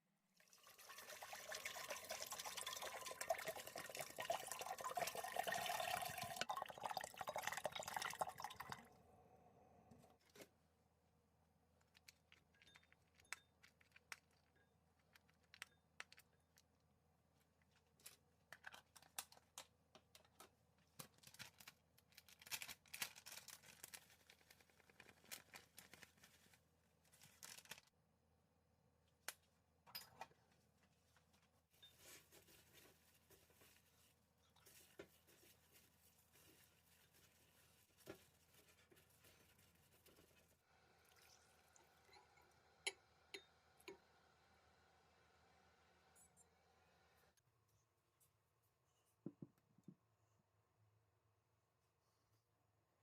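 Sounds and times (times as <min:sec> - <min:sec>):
water running from a tap: 0:00.4 - 0:08.7.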